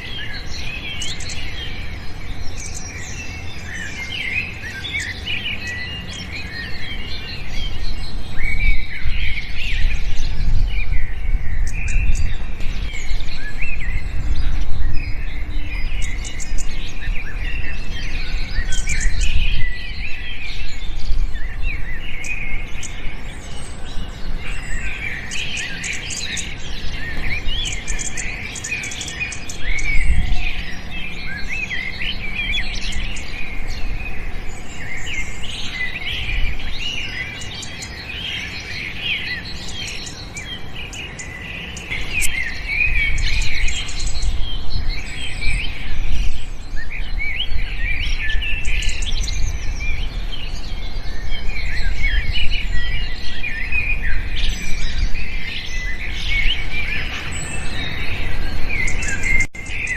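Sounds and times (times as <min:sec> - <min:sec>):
small birds chirping and twittering: 0:00.0 - 0:59.9.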